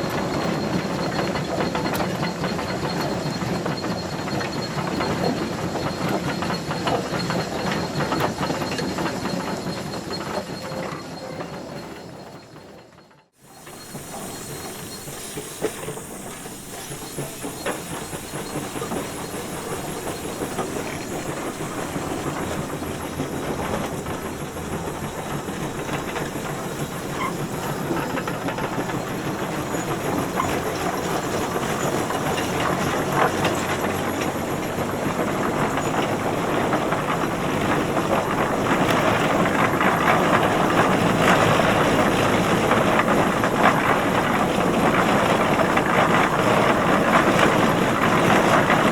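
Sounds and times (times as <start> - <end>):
tractor engine running: 13.4 - 48.9.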